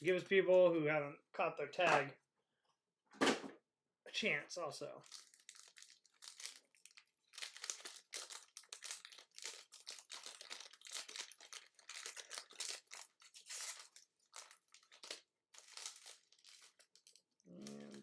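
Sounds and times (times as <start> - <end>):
plastic wrapping crinkling and tearing: 5.0 - 18.0.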